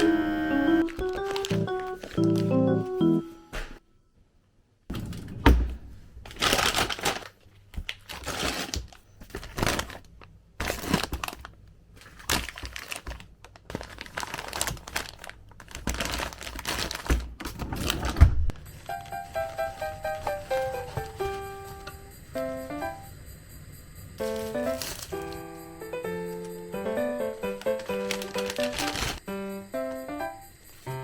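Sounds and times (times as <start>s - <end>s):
crinkling and rustling: 0.8s - 2.8s, 6.2s - 22.1s, 24.2s - 25.5s, 27.4s - 29.2s.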